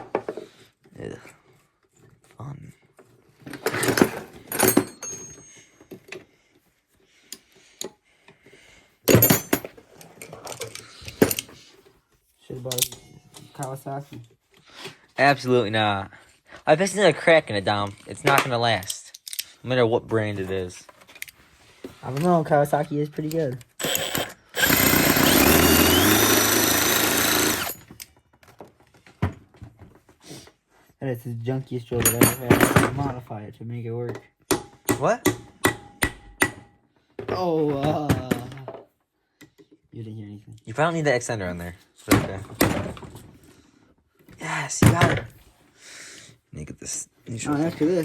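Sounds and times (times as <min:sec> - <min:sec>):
hand tools clicking on metal: 0:23.6 - 0:28.1
power drill whirring: 0:23.8 - 0:28.0.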